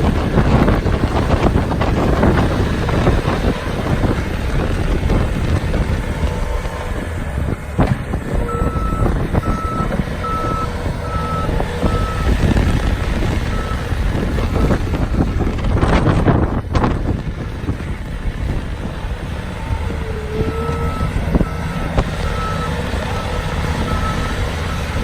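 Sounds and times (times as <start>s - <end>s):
loader engine running: 0.0s - 25.0s
backup alarm beeping: 8.3s - 12.7s, 20.5s - 25.0s.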